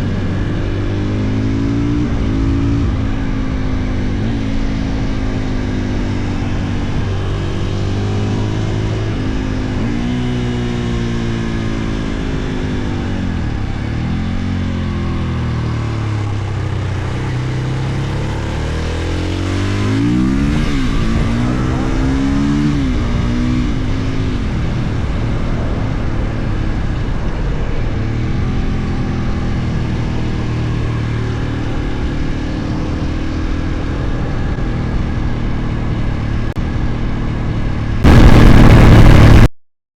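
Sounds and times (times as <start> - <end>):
motorcycle engine revving: 0.0 - 39.5.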